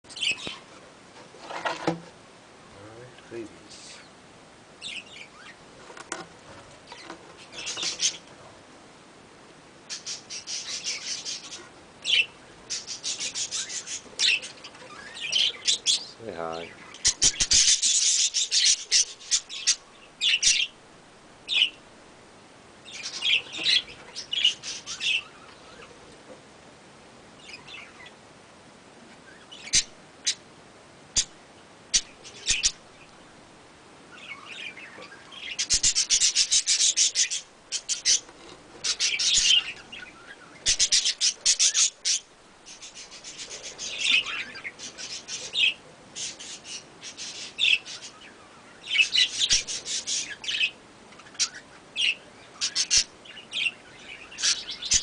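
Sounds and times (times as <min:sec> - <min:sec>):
budgerigar chicks chirping: 0:00.1 - 0:00.7, 0:04.8 - 0:06.2, 0:06.8 - 0:08.3, 0:09.9 - 0:20.8, 0:22.8 - 0:26.0, 0:29.3 - 0:30.4, 0:31.1 - 0:33.1, 0:34.1 - 0:55.0.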